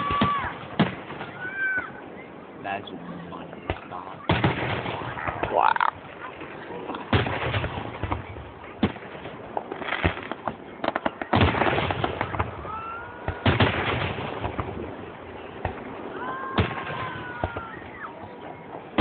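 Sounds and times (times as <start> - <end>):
dense firework crackling: 3.6 - 19.0
rising firework whistle: 16.1 - 18.4.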